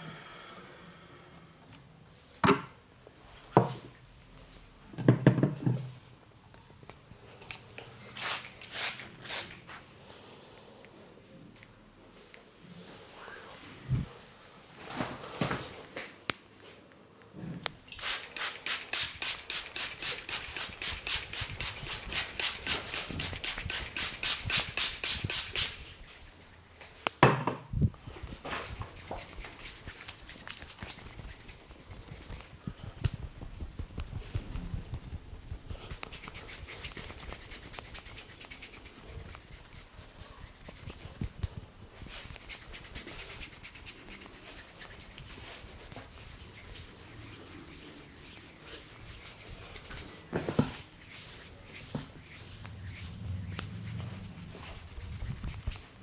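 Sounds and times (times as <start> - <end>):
soft patting and rubbing: 19.0 - 27.1, 28.1 - 56.0
hands slapping and tapping head: 28.7 - 38.8.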